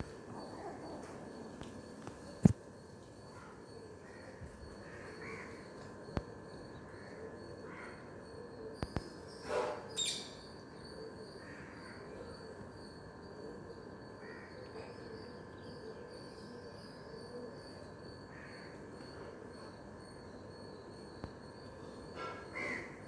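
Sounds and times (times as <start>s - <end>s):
faint background hum: 0.0s - 23.0s
crows cawing: 7.7s - 8.0s, 22.2s - 23.0s.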